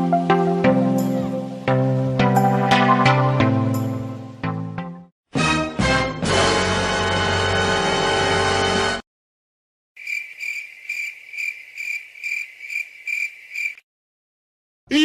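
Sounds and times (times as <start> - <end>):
music: 0.0 - 9.0
cricket chirping: 10.0 - 13.8.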